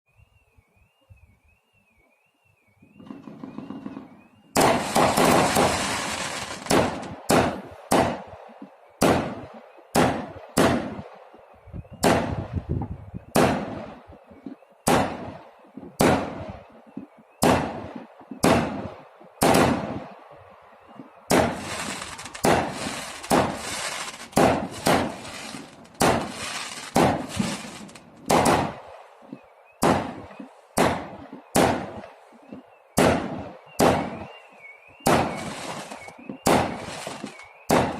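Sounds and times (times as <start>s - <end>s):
fireworks bangs: 2.9s - 11.2s, 11.9s - 14.1s, 14.8s - 16.7s, 17.4s - 20.3s, 21.3s - 29.1s, 29.8s - 34.4s, 35.0s - 37.9s
fireworks crackling: 3.1s - 8.3s, 21.3s - 28.8s, 35.1s - 37.9s.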